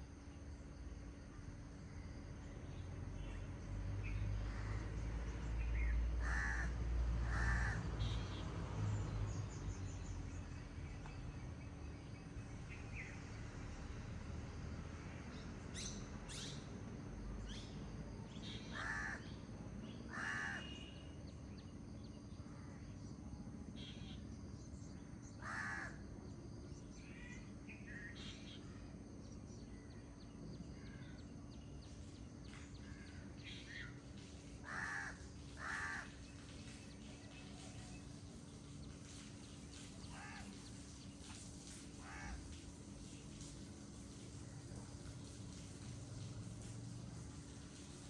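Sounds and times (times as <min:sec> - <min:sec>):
small birds chirping: 0:31.0 - 0:48.0
large bird calling loudly: 0:34.6 - 0:36.2
flowing water: 0:35.6 - 0:48.0.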